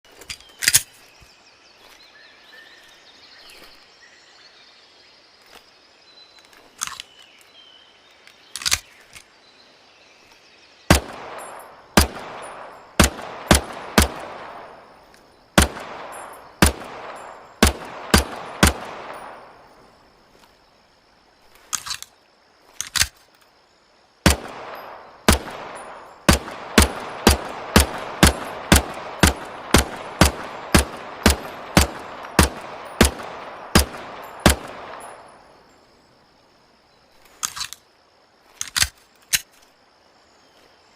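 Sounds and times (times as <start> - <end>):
pistol shots with echo: 10.9 - 19.8, 24.2 - 35.6.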